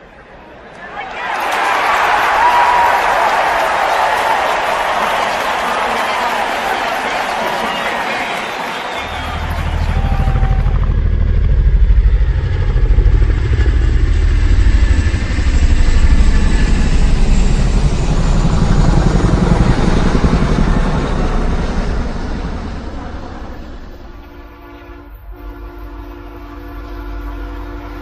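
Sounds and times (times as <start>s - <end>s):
passing vehicle engine rumble: 9.0s - 24.4s.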